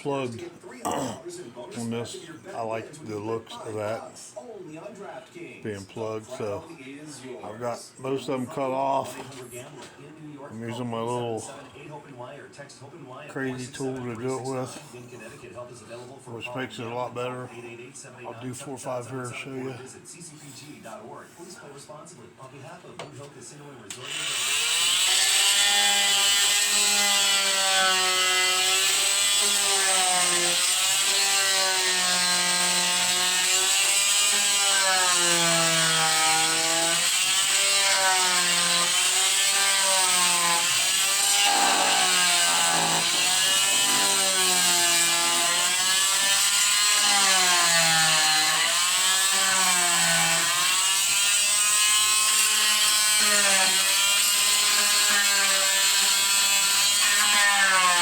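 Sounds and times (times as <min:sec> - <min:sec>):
power tool cutting wood: 0:23.9 - 0:58.0.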